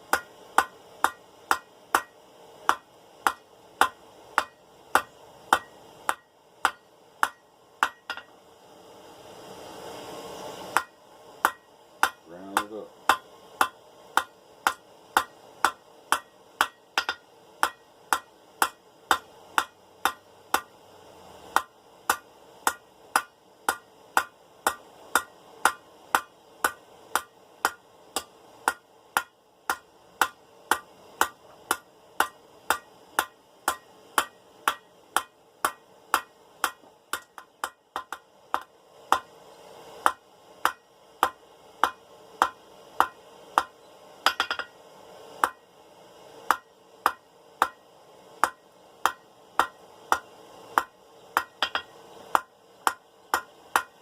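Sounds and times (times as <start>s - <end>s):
hammer striking metal on anvil: 0.1s - 8.4s, 10.7s - 20.7s, 21.5s - 39.3s, 40.0s - 44.8s, 45.4s - 45.6s, 46.5s - 47.8s, 48.4s - 54.0s.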